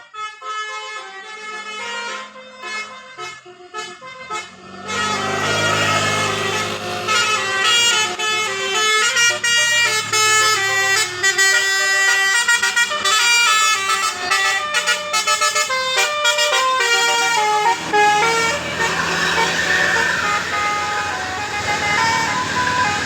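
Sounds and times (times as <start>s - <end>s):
multi-tone musical bus horn: 0.0s - 23.0s
low engine hum: 3.9s - 13.0s, 16.6s - 23.0s.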